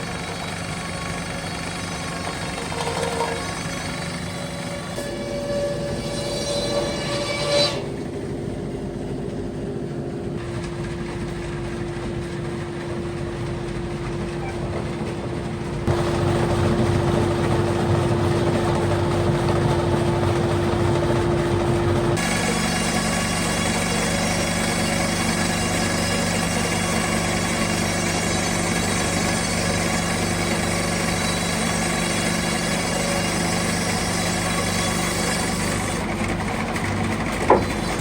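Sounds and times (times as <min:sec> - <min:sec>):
constant hum: 0:00.0 - 0:26.7
sawmill machinery drone: 0:00.0 - 0:38.0.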